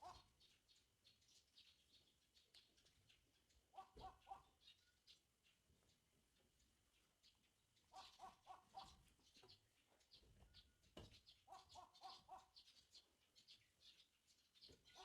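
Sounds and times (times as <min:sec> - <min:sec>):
faint bird calls: 0:03.6 - 0:05.2, 0:07.4 - 0:15.0.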